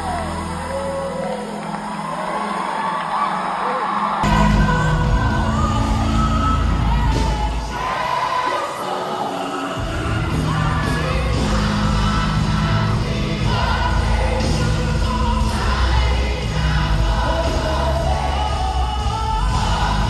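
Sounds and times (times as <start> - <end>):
group singing: 0.0 - 20.0
gospel band playing: 1.8 - 20.0
heavy bass line: 4.2 - 7.7, 9.9 - 20.0.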